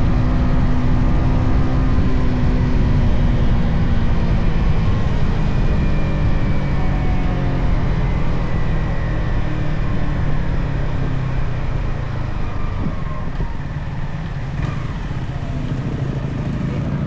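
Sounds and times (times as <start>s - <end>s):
wind noise on microphone: 0.0s - 17.0s
motorcycle engine running: 12.7s - 17.0s.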